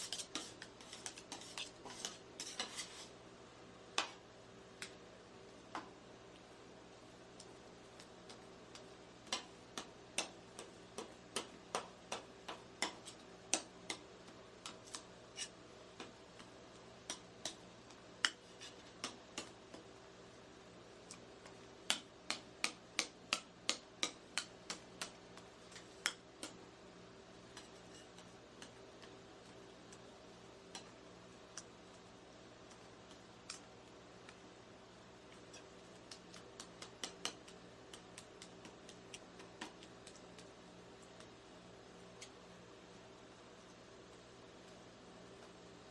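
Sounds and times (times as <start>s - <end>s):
metal spatulas tapping on steel: 8.3s - 15.5s, 21.9s - 26.6s.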